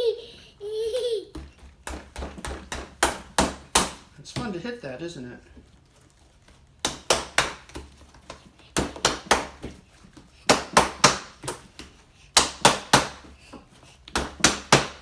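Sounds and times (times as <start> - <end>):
hand slapping slime: 1.8 - 4.6, 6.8 - 13.4, 14.0 - 15.0.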